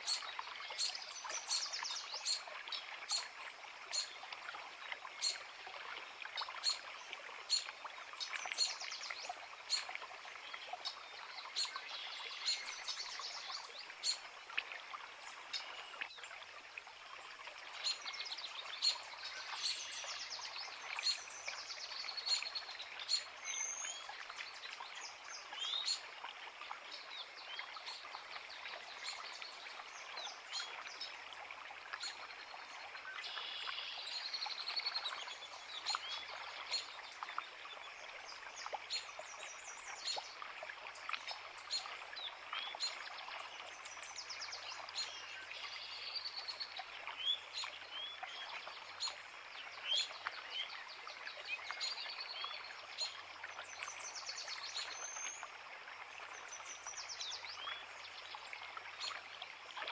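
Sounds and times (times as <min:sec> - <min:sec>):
creek water rushing: 0:00.0 - 0:59.9
woodland birds singing: 0:41.6 - 0:55.4.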